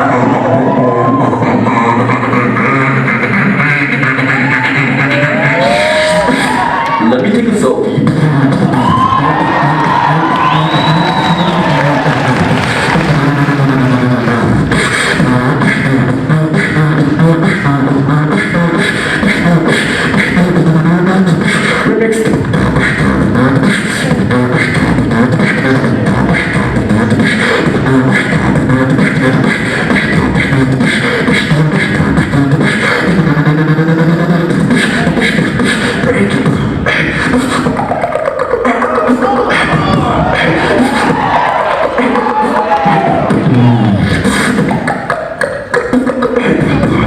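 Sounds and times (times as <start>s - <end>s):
person beatboxing: 0.0s - 47.0s
hummed bass line: 7.3s - 38.0s.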